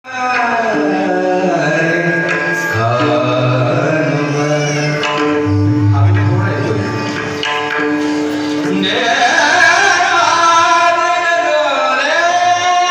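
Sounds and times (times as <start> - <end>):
person singing devotional melody: 0.1 - 7.4, 8.6 - 12.9
light percussion: 0.1 - 12.9
held instrumental notes: 0.9 - 12.8.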